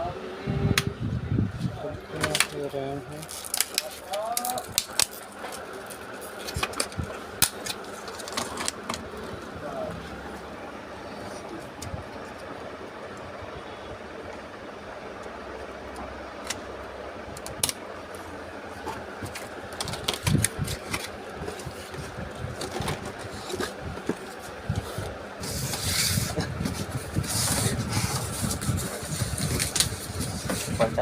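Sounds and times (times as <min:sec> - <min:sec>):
steady background hum: 0:00.0 - 0:31.0
rustling and scraping: 0:02.1 - 0:10.5, 0:18.7 - 0:31.0.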